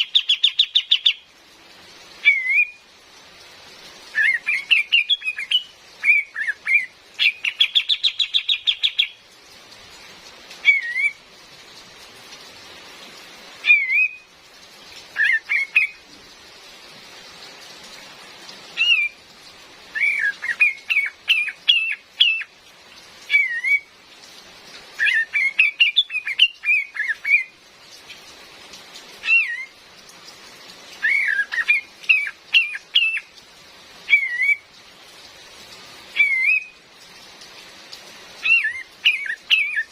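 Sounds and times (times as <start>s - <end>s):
rain hiss: 0.0s - 39.9s
bird whistled calls: 2.2s - 2.8s, 4.1s - 9.2s, 10.6s - 11.2s, 13.6s - 14.3s, 15.2s - 16.0s, 18.8s - 19.2s, 20.0s - 22.5s, 23.3s - 23.9s, 25.0s - 27.5s, 29.2s - 29.7s, 31.0s - 33.3s, 34.1s - 34.6s, 36.2s - 36.8s, 38.4s - 39.9s.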